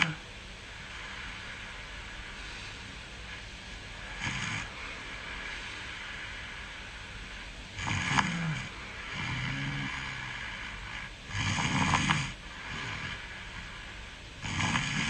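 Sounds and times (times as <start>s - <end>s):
person snoring loudly: 0.0s - 0.2s, 4.1s - 5.1s, 7.8s - 13.8s, 14.4s - 15.0s
quiet breath: 0.0s - 15.0s.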